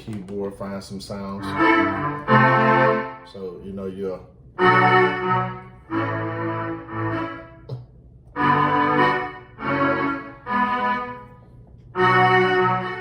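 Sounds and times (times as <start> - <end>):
electronic keyboard chords: 0.0 - 13.0
low bass line: 1.3 - 3.3, 4.6 - 11.2.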